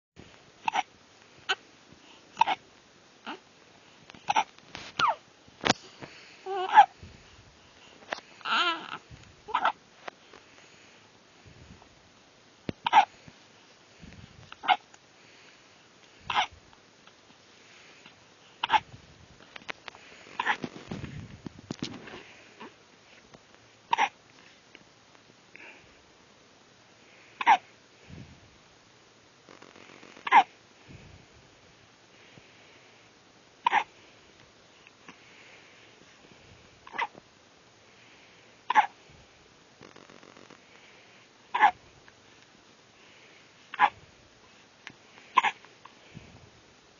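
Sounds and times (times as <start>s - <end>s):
baby hiccuping: 0.6s - 0.9s, 2.4s - 2.6s, 4.3s - 5.2s, 12.8s - 13.1s, 30.2s - 30.5s, 33.6s - 33.9s, 38.7s - 38.9s, 41.5s - 41.8s, 45.4s - 45.6s.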